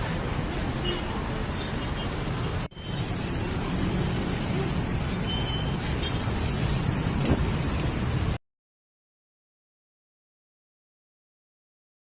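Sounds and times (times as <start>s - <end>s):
road traffic noise: 0.0s - 8.4s.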